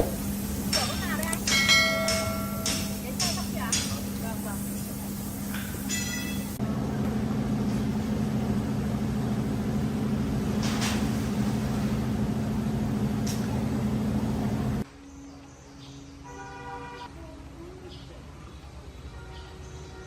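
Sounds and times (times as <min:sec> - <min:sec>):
vehicle engine running: 0:00.0 - 0:14.8.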